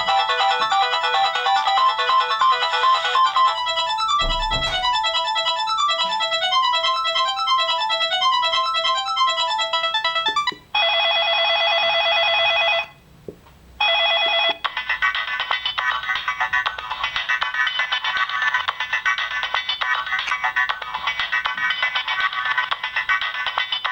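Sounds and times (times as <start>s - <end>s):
ringtone of rapid repeated notes: 0.0s - 12.8s
quick electronic ringtone melody: 0.0s - 12.9s.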